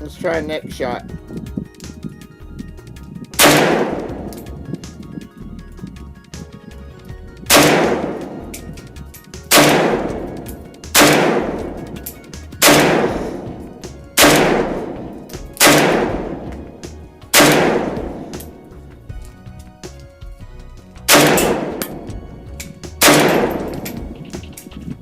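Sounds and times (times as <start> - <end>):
faint background music: 0.0 - 25.0
rifle shots: 3.4 - 5.0, 7.5 - 18.8, 21.1 - 22.2, 23.0 - 24.4.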